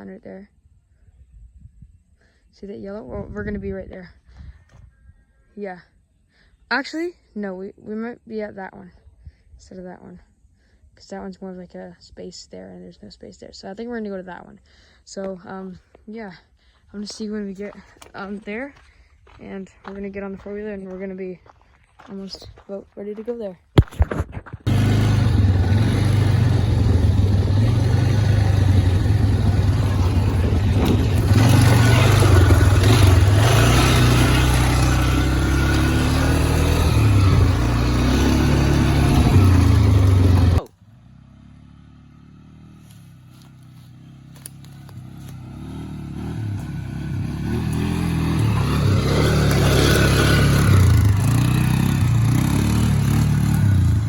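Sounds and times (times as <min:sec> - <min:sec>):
atv engine running: 0:24.6 - 0:54.0.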